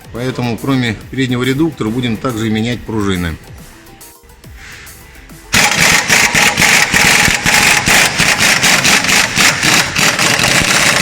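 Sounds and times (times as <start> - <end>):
impact wrench hammering: 5.6 - 11.0.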